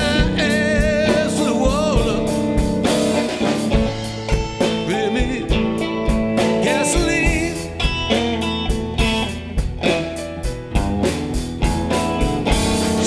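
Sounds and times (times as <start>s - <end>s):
person singing: 0.0s - 2.7s, 4.0s - 8.4s
blues guitar: 0.0s - 13.0s
drums playing steady beat: 0.0s - 13.0s.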